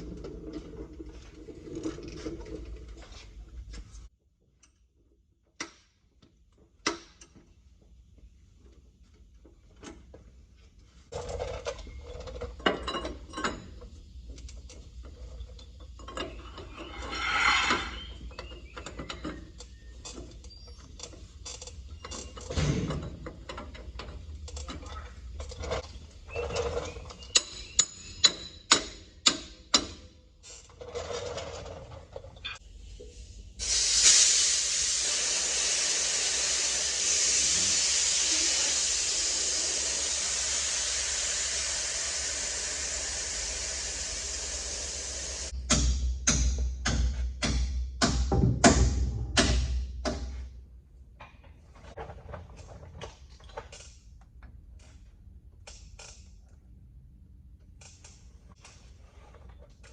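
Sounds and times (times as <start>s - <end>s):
short hiss: 33.6s - 45.4s.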